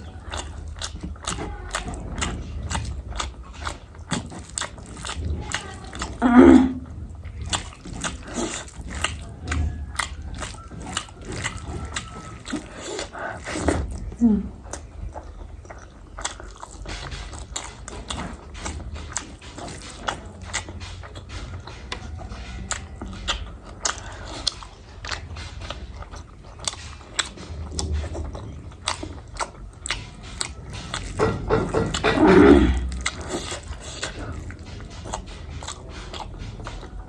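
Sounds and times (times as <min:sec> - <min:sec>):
person chewing food: 0:00.0 - 0:37.0
pitched throat sound: 0:06.1 - 0:07.0, 0:31.8 - 0:33.6.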